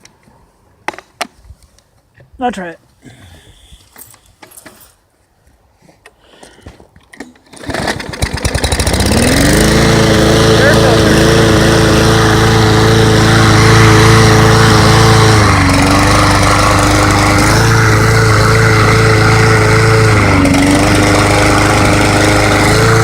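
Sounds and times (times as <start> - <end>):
lawn mower engine running: 7.1 - 23.0.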